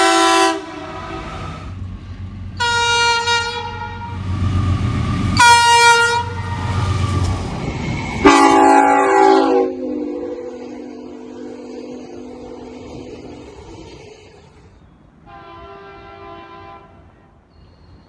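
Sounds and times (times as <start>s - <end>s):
train air horn blasts: 0.0s - 1.6s, 2.6s - 4.2s, 5.4s - 6.8s, 8.2s - 11.6s, 15.3s - 17.4s
train rumble: 0.0s - 18.0s
second horn held tone: 8.3s - 10.5s.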